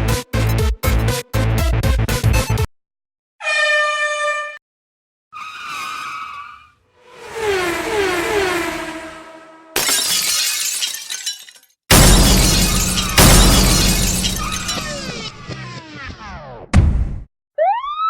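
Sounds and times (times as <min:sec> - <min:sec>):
falling pitch sweeps: 0:07.0 - 0:09.8
car horn blast: 0:07.8 - 0:09.8
crash-like burst: 0:11.9 - 0:15.3.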